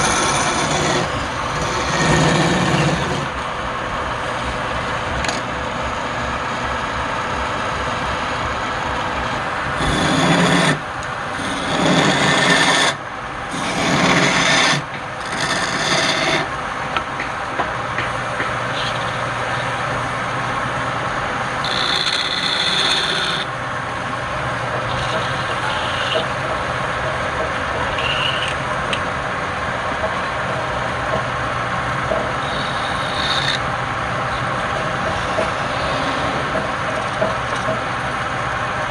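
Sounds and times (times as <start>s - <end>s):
lathe tool cutting wood: 0.0s - 3.4s, 4.2s - 16.5s, 21.5s - 23.5s, 32.3s - 33.7s
wood lathe motor hum: 0.0s - 16.6s, 18.8s - 26.6s, 32.1s - 37.2s.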